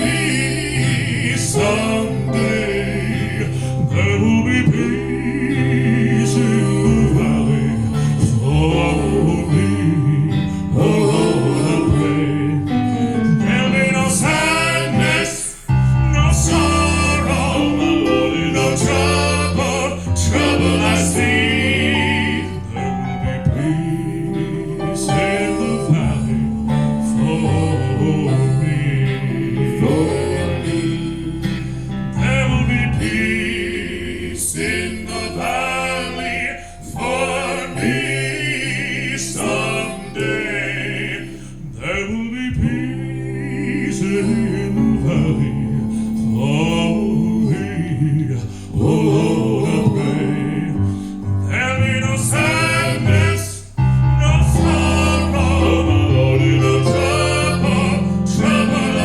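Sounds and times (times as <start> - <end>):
gospel choir singing: 0.0 - 59.0.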